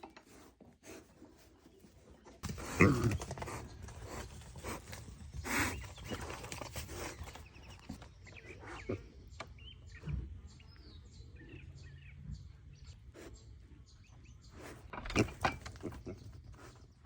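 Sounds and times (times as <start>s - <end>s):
chickens clucking and chirping: 0.0s - 17.0s.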